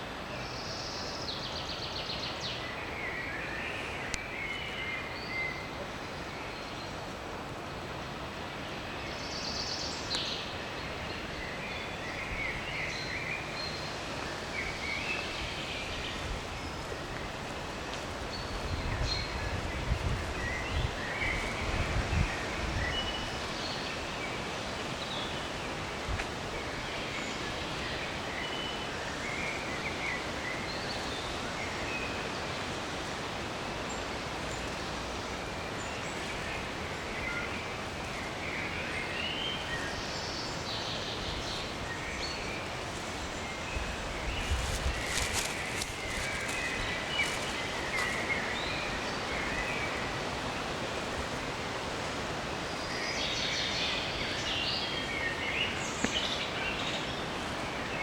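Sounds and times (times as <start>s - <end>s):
leaves rustling in wind: 0.0s - 58.0s
small birds chirping: 35.6s - 50.1s.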